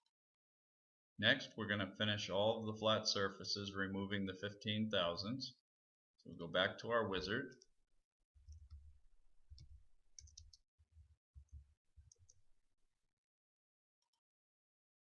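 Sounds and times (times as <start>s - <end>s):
computer mouse clicks: 8.4s - 8.9s, 9.5s - 10.6s, 11.4s - 12.4s.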